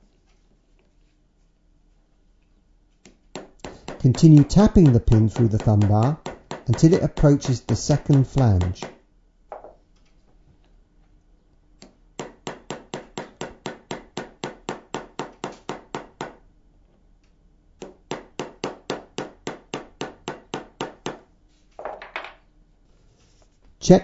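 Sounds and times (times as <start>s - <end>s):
hammer tapping metal punch: 3.4s - 9.0s.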